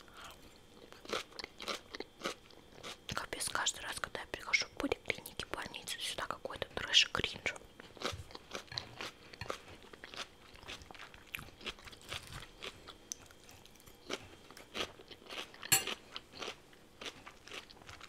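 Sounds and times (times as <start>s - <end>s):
person chewing crunchy food: 0.1s - 3.2s, 7.7s - 18.0s.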